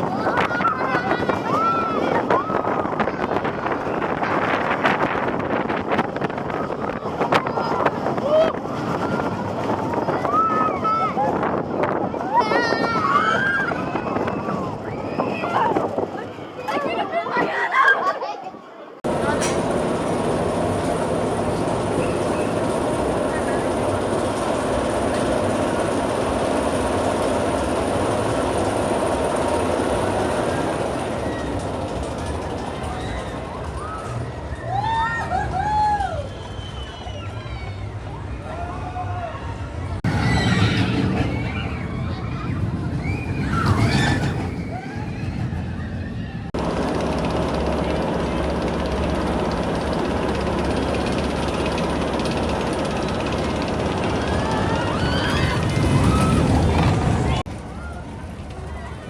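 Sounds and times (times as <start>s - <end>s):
roller coaster wheels rumbling on rail: 0.0s - 18.3s, 19.0s - 59.0s.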